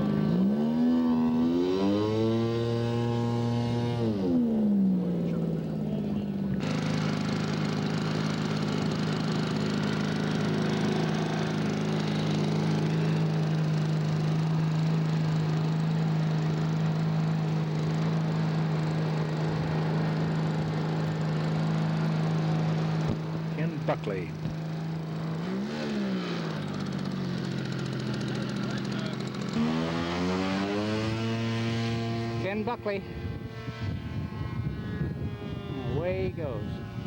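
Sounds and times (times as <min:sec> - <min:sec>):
model aircraft engine running: 0:00.0 - 0:37.0.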